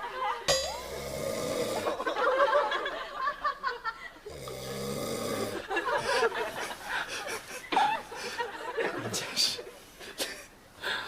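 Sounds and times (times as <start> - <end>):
man snoring: 0.8 - 2.1, 4.3 - 5.7.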